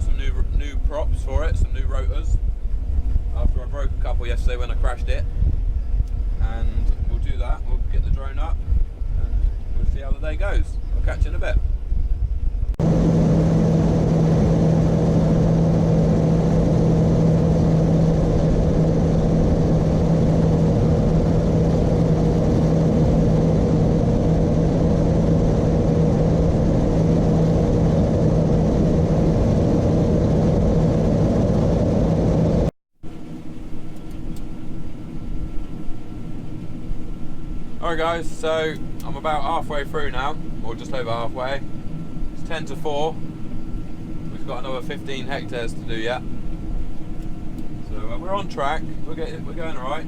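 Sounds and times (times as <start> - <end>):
quieter engine: 0.0 - 50.0
diesel farm machinery running: 12.8 - 50.0.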